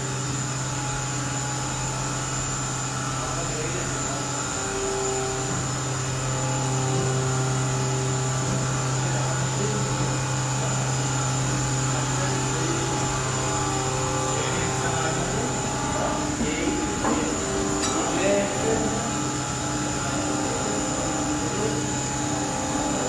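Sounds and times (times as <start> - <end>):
lathe machine hum with whine: 0.0 - 23.0
motor tones: 0.0 - 23.0.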